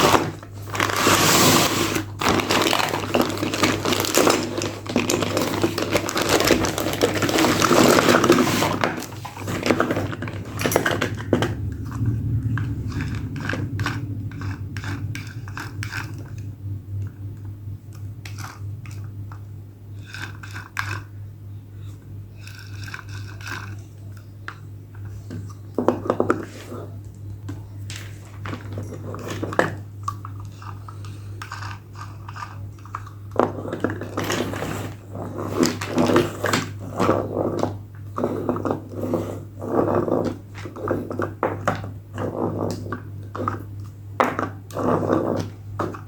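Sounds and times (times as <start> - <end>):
packaging crinkling and scraping: 0.0 - 16.5, 27.9 - 46.0
low hum: 0.0 - 20.1.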